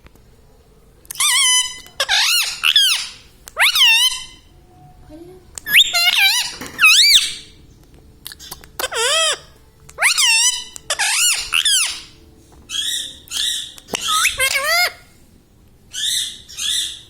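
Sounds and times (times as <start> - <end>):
parakeet calling: 1.1 - 4.6, 5.6 - 7.6, 8.3 - 15.2, 15.9 - 17.0.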